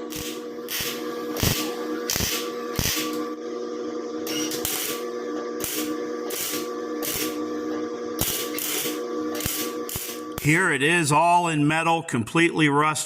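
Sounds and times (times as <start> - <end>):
welder crackling bursts: 0.0 - 3.2, 4.5 - 7.4, 8.2 - 10.8
steady hum: 0.0 - 13.0.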